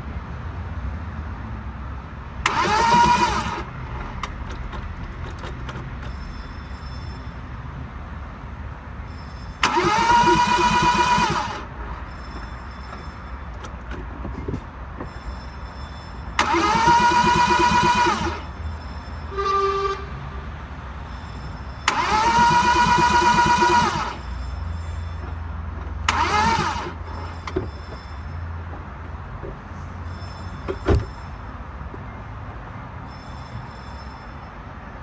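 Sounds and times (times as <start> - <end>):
car starter motor cranking: 2.4 - 6.2, 9.6 - 12.0, 16.4 - 18.6, 21.8 - 24.3, 26.0 - 27.6.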